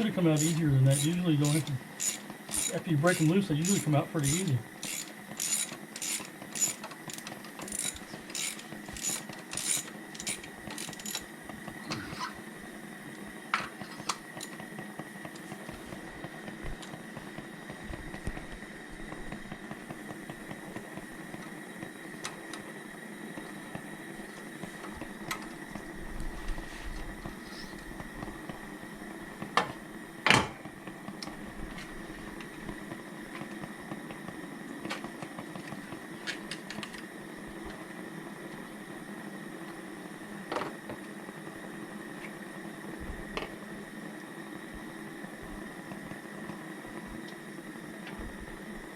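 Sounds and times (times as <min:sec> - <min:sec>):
faint steady hum: 0:00.0 - 0:48.9
metal tools clinking: 0:00.4 - 0:11.3
ratchet wrench clicking: 0:00.4 - 0:11.3.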